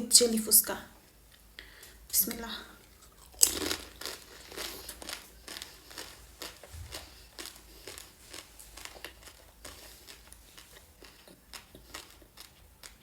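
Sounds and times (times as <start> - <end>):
crunching while chewing: 2.8 - 13.0
crisp shell cracking when bitten: 3.1 - 5.2.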